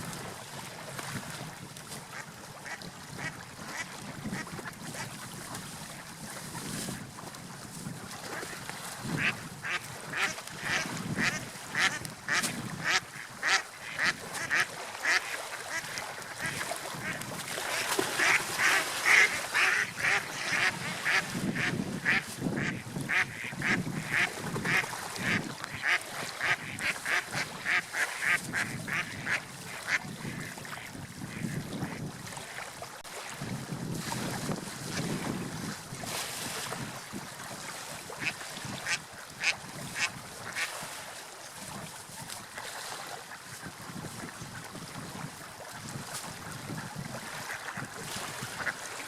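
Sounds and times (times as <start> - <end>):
water: 0.0 - 49.0
wind: 0.0 - 49.0.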